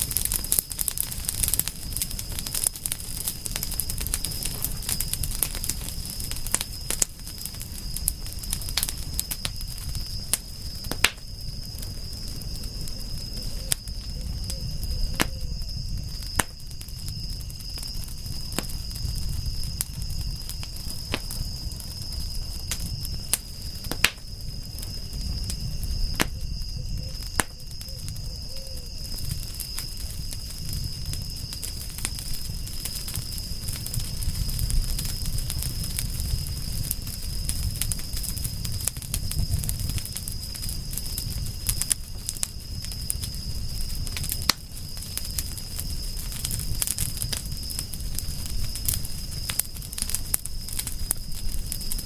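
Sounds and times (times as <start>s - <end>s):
wood fire crackling: 0.0s - 52.0s.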